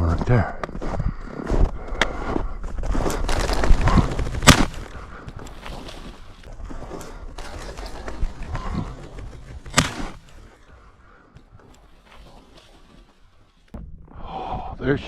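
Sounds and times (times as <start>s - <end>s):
rustling: 2.6s - 13.8s
shotgun shot: 3.9s - 5.0s, 9.5s - 10.4s.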